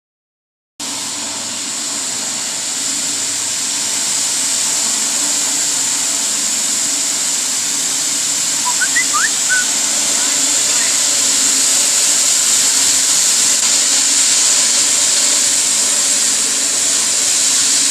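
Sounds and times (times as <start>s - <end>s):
steam hissing: 8.3s - 17.9s.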